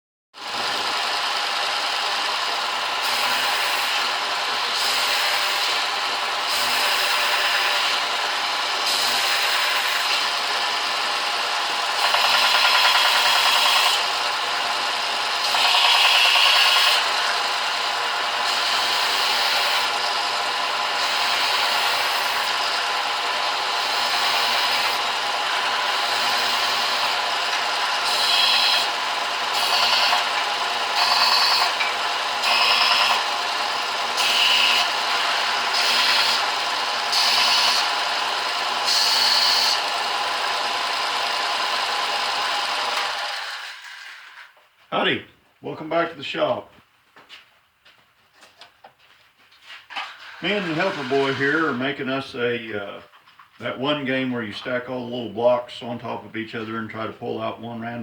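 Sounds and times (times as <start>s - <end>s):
belt sander running: 0.4s - 44.5s, 50.0s - 52.1s.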